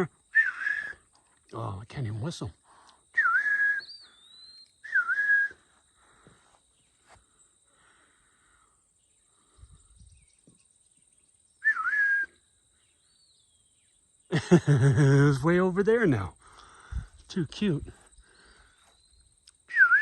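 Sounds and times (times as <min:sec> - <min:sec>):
person whistling short notes: 0:00.3 - 0:01.1, 0:03.2 - 0:04.2, 0:04.8 - 0:05.7, 0:11.6 - 0:12.4, 0:19.7 - 0:20.0.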